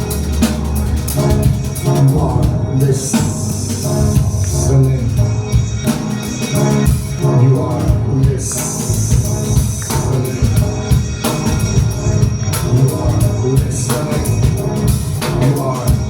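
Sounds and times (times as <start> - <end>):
bass line: 0.0 - 16.0
drum kit beat: 0.0 - 16.0.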